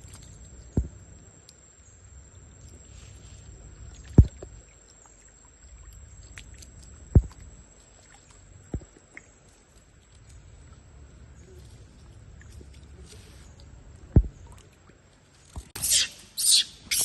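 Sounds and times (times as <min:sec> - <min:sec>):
water sloshing and splashing: 0:00.0 - 0:01.1, 0:02.5 - 0:15.8
dull low thumps: 0:04.1 - 0:04.6, 0:06.9 - 0:07.6, 0:14.1 - 0:14.4.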